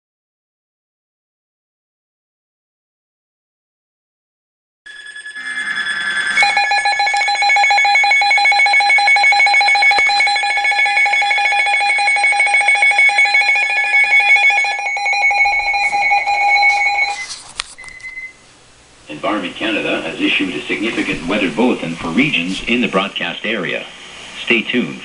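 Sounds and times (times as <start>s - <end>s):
pulsing two-pitch alarm: 4.9s - 18.4s
steady high tone: 4.9s - 18.4s.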